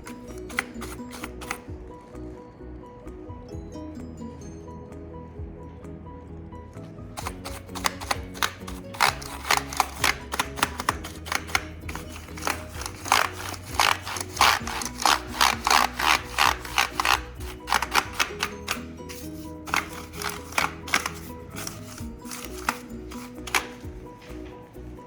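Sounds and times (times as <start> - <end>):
brush scrubbing keyboard keys: 0.0 - 1.7, 7.2 - 24.3
background music: 0.0 - 25.0.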